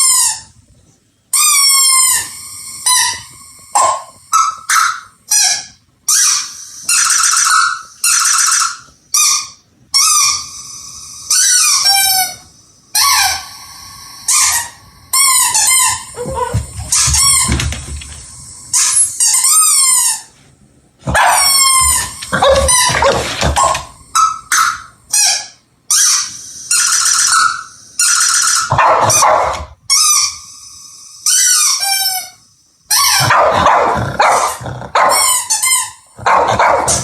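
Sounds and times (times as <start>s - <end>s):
squeaky toy bird squeaking: 1.3s - 10.7s, 11.3s - 12.4s, 13.0s - 13.5s, 14.3s - 17.7s, 18.7s - 20.3s, 21.1s - 28.8s, 31.2s - 33.3s, 35.1s - 36.0s
low scuffling thumps: 16.1s - 18.4s.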